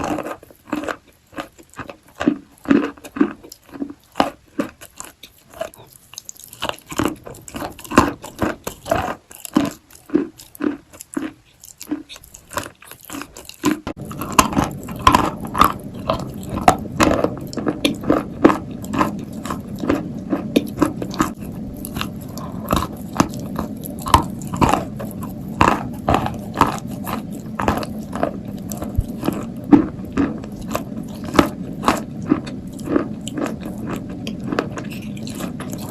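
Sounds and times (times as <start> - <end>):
clay being chewed: 0.0 - 35.9
steady low hiss: 13.8 - 35.9.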